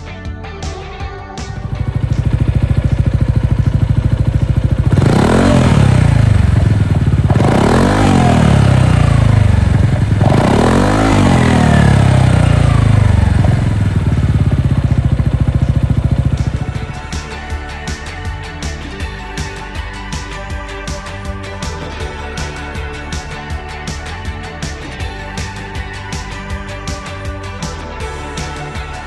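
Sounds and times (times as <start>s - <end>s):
scooter engine idling and revving: 0.0s - 29.0s.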